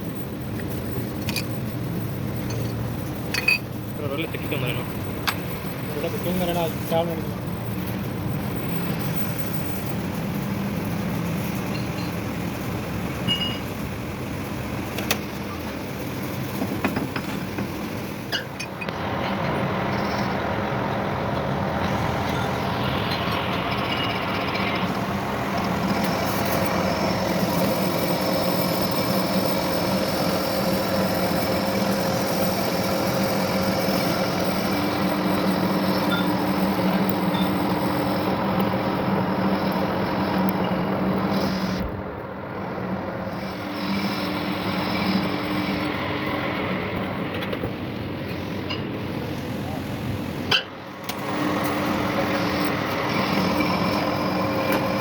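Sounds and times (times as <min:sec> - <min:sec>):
workshop machinery running: 0:00.0 - 0:55.0
motor humming: 0:09.8 - 0:42.1, 0:43.1 - 0:49.0, 0:50.0 - 0:55.0.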